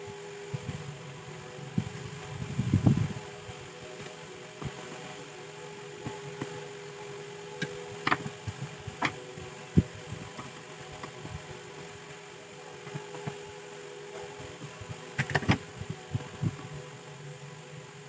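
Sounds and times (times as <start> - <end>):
fan-like hum: 0.0 - 18.0
sharp clicks and knocks: 7.6 - 9.2, 15.2 - 16.0.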